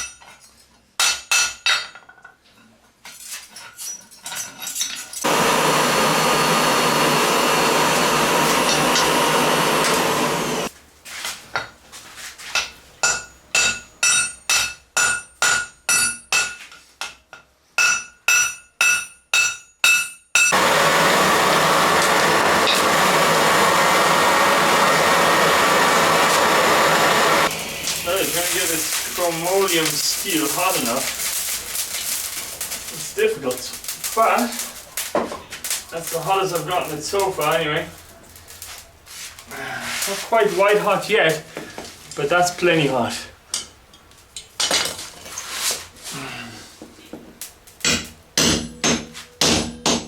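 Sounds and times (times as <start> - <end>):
hammer ringing on anvil: 17.8 - 20.6.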